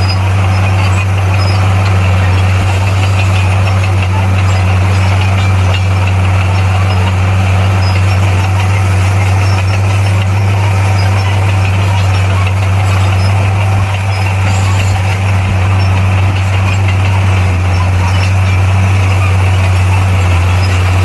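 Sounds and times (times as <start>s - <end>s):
bulldozer diesel engine running: 0.0s - 21.0s.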